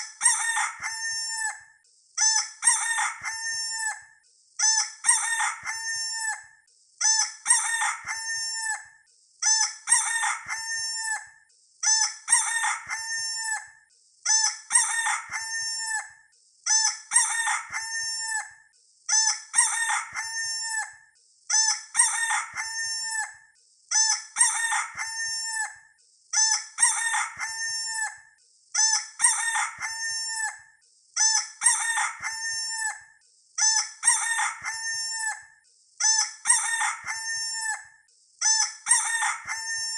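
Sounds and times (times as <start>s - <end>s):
rooster crowing: 0.3s - 1.6s, 2.7s - 4.0s, 5.1s - 6.5s, 7.5s - 8.8s, 9.9s - 11.2s, 12.3s - 13.7s, 14.8s - 16.1s, 17.1s - 18.5s, 19.6s - 21.0s, 22.0s - 23.4s, 24.4s - 25.8s, 26.8s - 28.2s, 29.2s - 30.6s, 31.7s - 33.0s, 34.0s - 35.4s, 36.5s - 37.8s, 38.9s - 39.9s.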